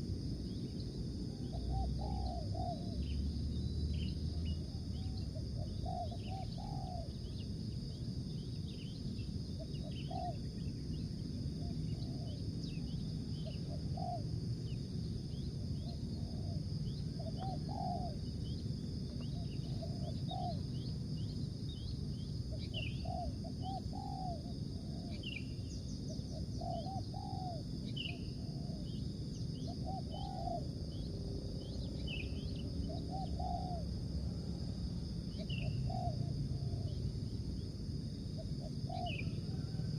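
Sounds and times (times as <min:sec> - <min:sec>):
insect drone: 0:00.0 - 0:39.9
small birds chirping: 0:00.5 - 0:33.9, 0:35.3 - 0:37.0
doves cooing: 0:01.4 - 0:03.0, 0:05.0 - 0:07.2, 0:09.6 - 0:10.5, 0:11.6 - 0:12.4, 0:13.4 - 0:14.3, 0:17.2 - 0:18.3, 0:19.1 - 0:20.6, 0:22.5 - 0:25.3, 0:26.1 - 0:29.0, 0:29.7 - 0:30.6, 0:32.9 - 0:33.9, 0:35.4 - 0:37.0, 0:38.4 - 0:39.9.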